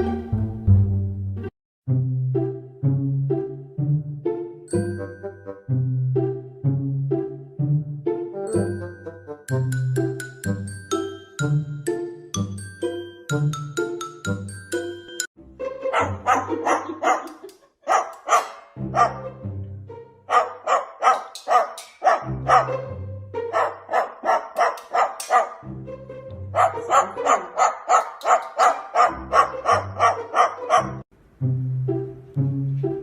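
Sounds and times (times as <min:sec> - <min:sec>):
upbeat music with bass line: 0:04.8 - 0:15.3
rapid bark-like yaps: 0:15.9 - 0:19.3, 0:20.3 - 0:22.8, 0:23.5 - 0:25.6, 0:26.6 - 0:31.0.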